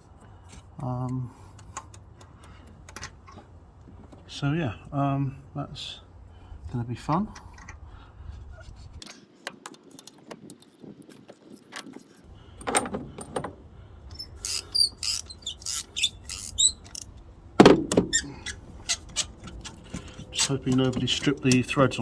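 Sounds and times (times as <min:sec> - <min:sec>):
metal hand tools clicking: 0:14.1 - 0:17.2.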